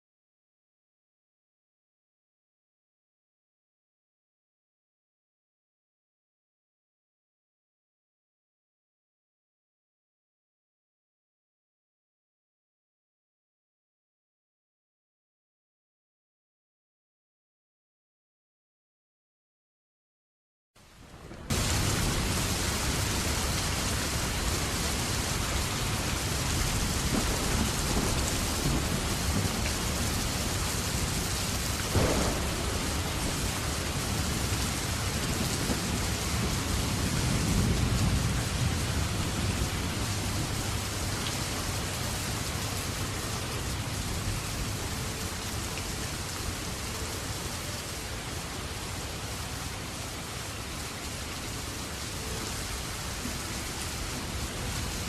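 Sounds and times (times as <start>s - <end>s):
heavy rain hissing: 20.8s - 55.0s.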